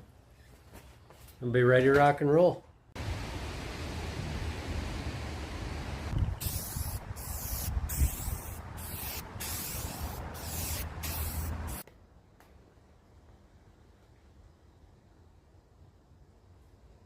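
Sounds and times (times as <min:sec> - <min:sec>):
spray paint hissing from aerosol can: 0:06.2 - 0:11.8.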